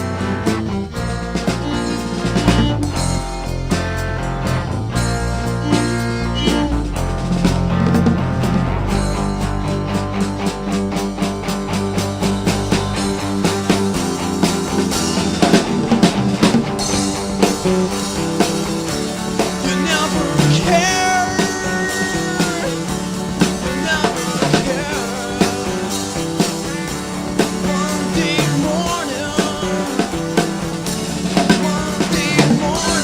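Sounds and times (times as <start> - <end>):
rock band playing: 0.0 - 33.0
person singing: 5.6 - 7.1, 19.4 - 26.7, 27.4 - 33.0.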